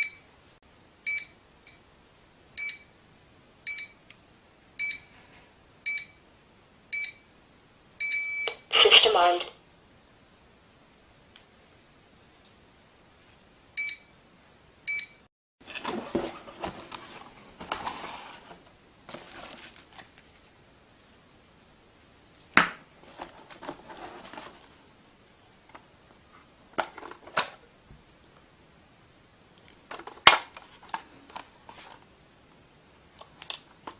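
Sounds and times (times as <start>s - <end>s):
short electronic alarm beeps: 8.0s - 8.6s, 14.9s - 15.2s
rustling and clattering: 15.6s - 20.5s, 23.0s - 24.9s, 26.7s - 27.7s, 29.9s - 32.1s.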